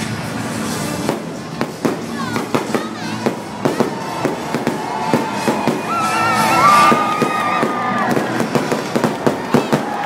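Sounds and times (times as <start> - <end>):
fireworks bangs and pops: 0.0 - 10.0.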